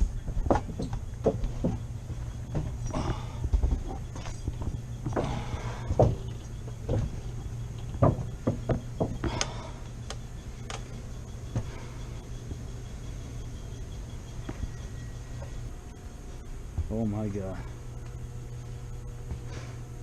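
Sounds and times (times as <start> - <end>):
steady low hum: 0.0 - 20.0
knocks and clunks: 0.3 - 9.6.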